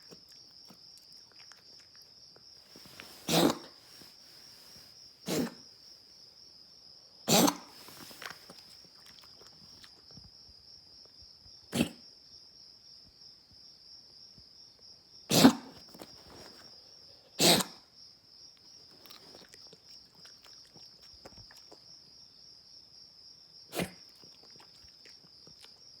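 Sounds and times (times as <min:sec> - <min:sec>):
crickets trilling: 0:00.0 - 0:26.0
dog coughing: 0:02.9 - 0:03.8, 0:05.2 - 0:05.7, 0:07.2 - 0:08.5, 0:11.7 - 0:12.0, 0:15.3 - 0:16.6, 0:17.4 - 0:17.8, 0:23.7 - 0:24.2.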